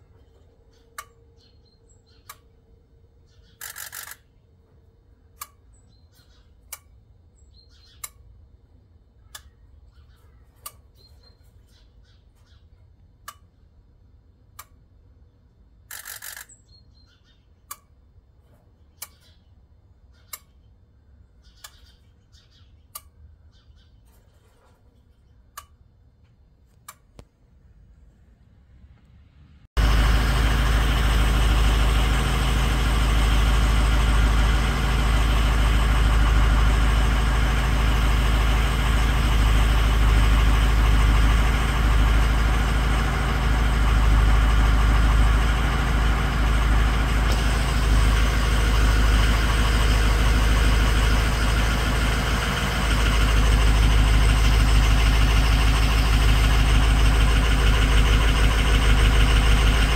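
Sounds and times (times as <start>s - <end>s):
diesel engine idling: 29.7s - 59.9s.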